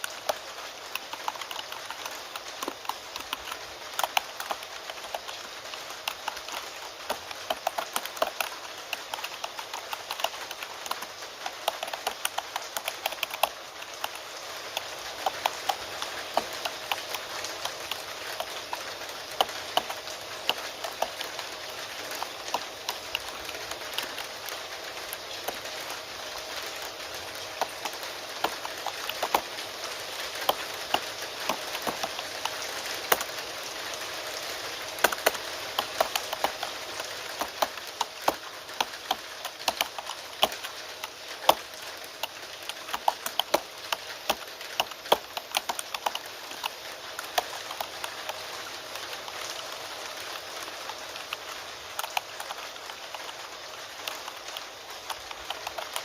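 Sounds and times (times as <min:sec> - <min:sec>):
keyboard typing: 0:00.0 - 0:56.0
rain pattering: 0:00.0 - 0:56.0.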